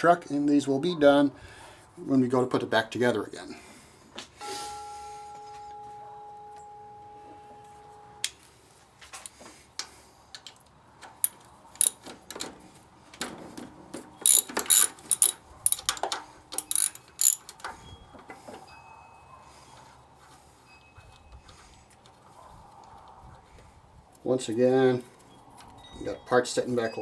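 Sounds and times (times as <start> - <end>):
faint metallic ring: 4.4 - 8.3
socket ratchet clicking: 11.2 - 12.5, 14.2 - 17.6
metal clicks and taps: 14.2 - 17.8.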